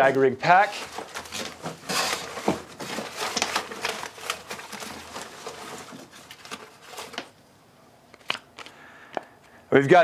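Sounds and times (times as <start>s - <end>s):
paper slips rustling: 0.0s - 7.4s.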